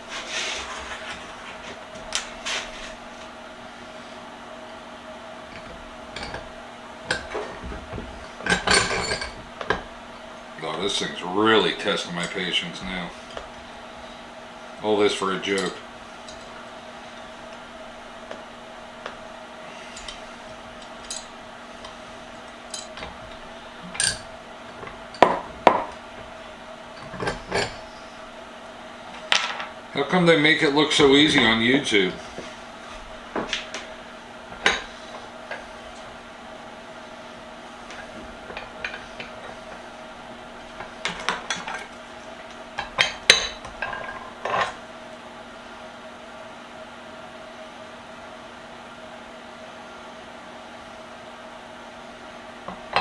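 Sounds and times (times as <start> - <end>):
metal vise parts clinking: 5.5 - 10.0, 15.4 - 16.6, 19.9 - 28.2, 30.8 - 36.2, 37.8 - 44.8.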